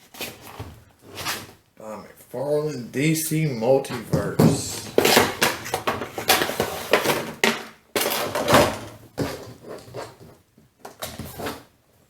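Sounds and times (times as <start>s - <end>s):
packaging rustling and clattering: 4.2s - 11.7s.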